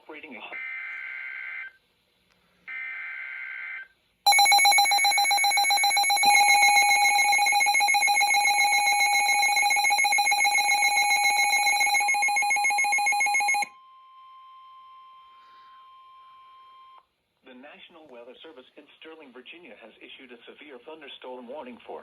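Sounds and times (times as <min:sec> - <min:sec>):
two-tone alarm: 0:04.3 - 0:13.7.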